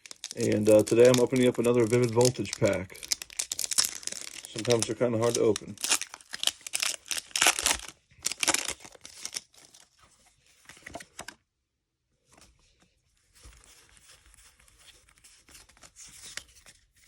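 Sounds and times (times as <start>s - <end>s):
wrapper ripping and crinkling: 0.0s - 9.9s.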